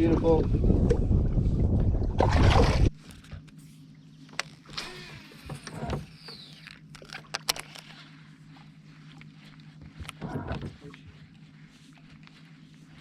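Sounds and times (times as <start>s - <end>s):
small motor humming: 3.5s - 11.3s.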